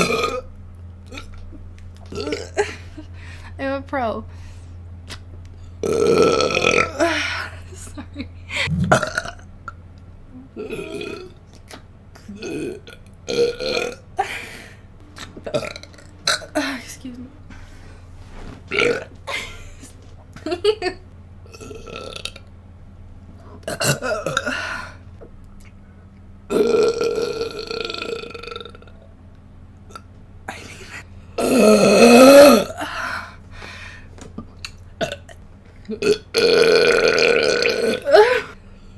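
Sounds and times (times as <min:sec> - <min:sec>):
person belching: 0:00.0 - 0:00.5, 0:02.1 - 0:02.7, 0:05.8 - 0:07.5, 0:08.6 - 0:09.5, 0:10.5 - 0:11.4, 0:12.2 - 0:17.0, 0:18.7 - 0:19.8, 0:21.5 - 0:22.4, 0:23.6 - 0:24.9, 0:26.5 - 0:28.9, 0:29.9 - 0:32.9, 0:35.0 - 0:38.6
person burping: 0:00.0 - 0:00.5, 0:02.1 - 0:02.8, 0:05.8 - 0:07.6, 0:08.6 - 0:09.5, 0:10.5 - 0:11.4, 0:12.2 - 0:17.7, 0:18.7 - 0:20.9, 0:21.5 - 0:22.4, 0:23.6 - 0:25.0, 0:26.5 - 0:28.9, 0:29.9 - 0:33.0, 0:35.0 - 0:38.6.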